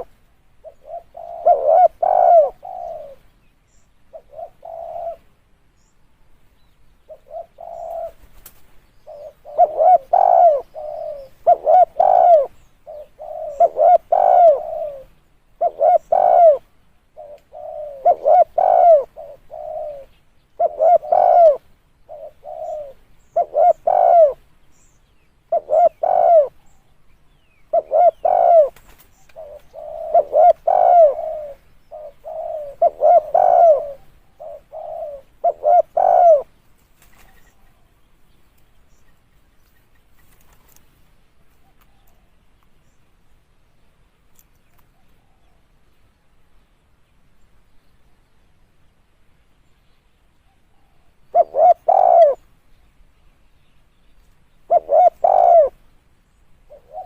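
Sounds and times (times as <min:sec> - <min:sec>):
dove cooing: 0:00.0 - 0:03.3, 0:04.1 - 0:05.4, 0:07.1 - 0:24.5, 0:25.4 - 0:27.0, 0:27.7 - 0:37.9, 0:50.5 - 0:52.5, 0:54.6 - 0:55.8, 0:56.6 - 0:57.0.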